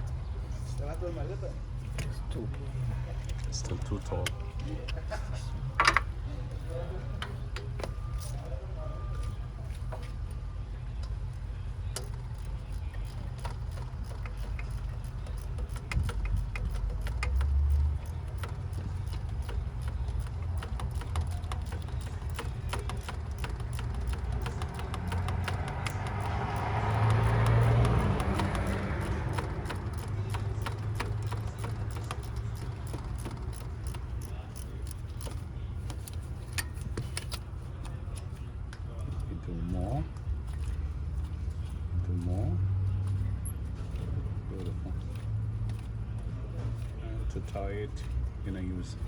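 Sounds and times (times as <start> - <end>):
socket ratchet clicking: 12.0 - 37.5.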